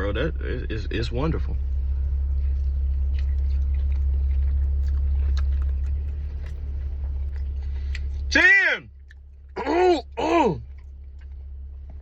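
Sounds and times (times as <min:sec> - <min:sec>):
car cabin rumble: 0:00.0 - 0:12.0
person chewing: 0:02.3 - 0:08.3.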